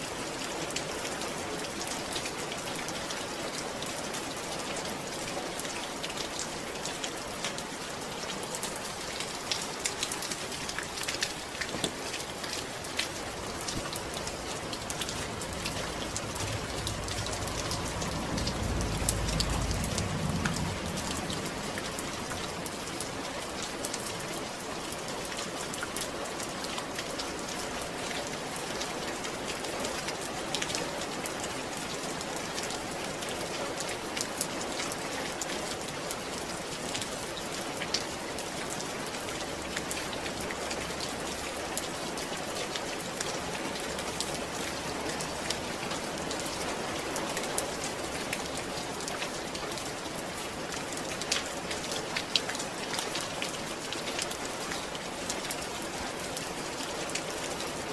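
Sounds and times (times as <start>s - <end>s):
raindrops ticking close by: 0.0s - 57.9s
steady rain: 0.0s - 57.9s
low rumble: 13.4s - 22.9s.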